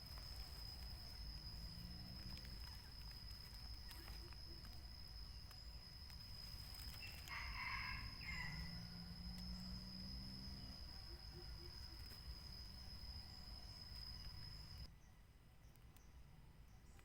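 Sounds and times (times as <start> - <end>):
steady high-pitched whine: 0.0 - 15.0
faint forest ambience: 0.0 - 17.0.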